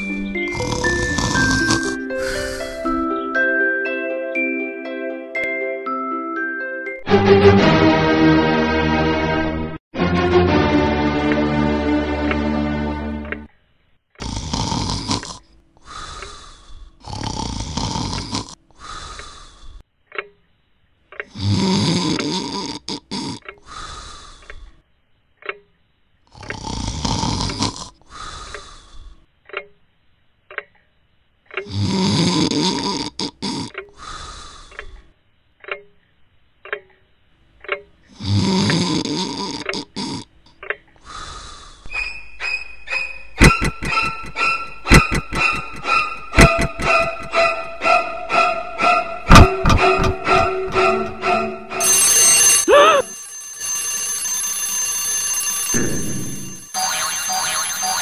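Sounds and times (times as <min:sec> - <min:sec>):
person snoring: 0:00.5 - 0:03.0, 0:14.2 - 0:19.8, 0:21.3 - 0:24.6, 0:26.3 - 0:29.2, 0:31.6 - 0:34.7, 0:38.2 - 0:40.3, 0:55.8 - 0:56.7
clock ticking: 0:43.4 - 0:47.8
bright ringing tones: 0:51.8 - 0:58.0.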